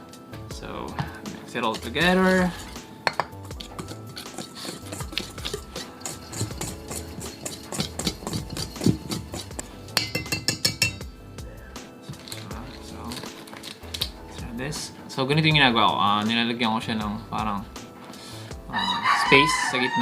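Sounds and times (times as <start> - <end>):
utensil scraping in mixing bowl: 1.6 - 9.7
clinks against bowl: 3.0 - 9.4, 10.0 - 11.1.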